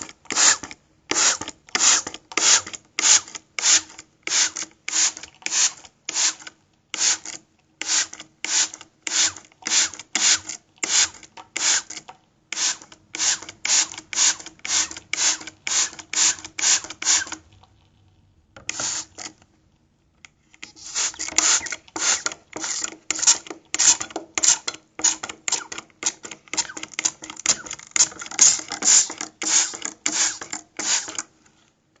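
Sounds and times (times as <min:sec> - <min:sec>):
spray bottle hissing sprays: 0:12.6 - 0:17.4, 0:18.7 - 0:19.2, 0:20.6 - 0:24.0, 0:28.4 - 0:31.2.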